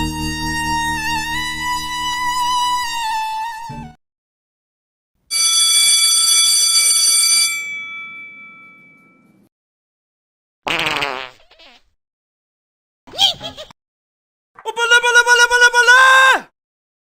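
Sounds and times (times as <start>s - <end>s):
bell-like ringing tone: 5.3s - 9.5s.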